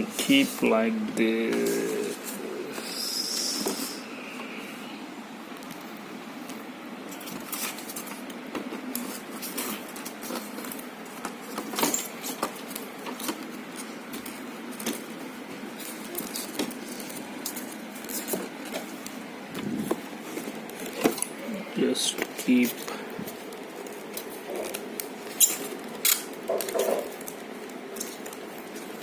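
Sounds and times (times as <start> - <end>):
steady low hum: 0.0 - 29.0
small clicks and rattles of parts: 5.6 - 19.2, 22.1 - 29.0.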